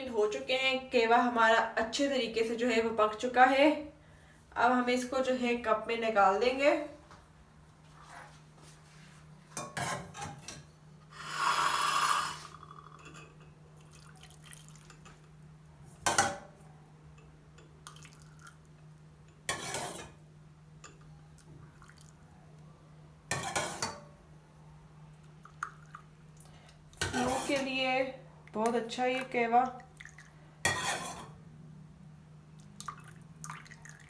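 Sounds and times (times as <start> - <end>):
tea pouring into a cup: 13.8 - 15.0, 17.9 - 18.6, 32.8 - 34.0.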